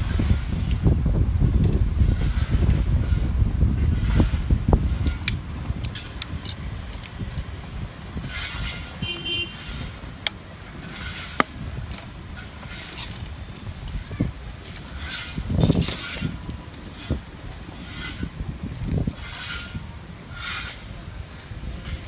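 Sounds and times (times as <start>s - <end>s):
low wind rumble: 0.0s - 22.0s
tools clicking and ticking: 5.0s - 7.5s, 14.7s - 15.1s.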